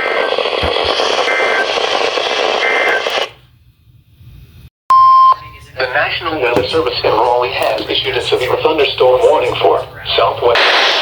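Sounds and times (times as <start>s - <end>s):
radio static hiss: 0.0s - 3.4s, 5.9s - 11.0s
short faint beeps: 4.9s - 5.4s.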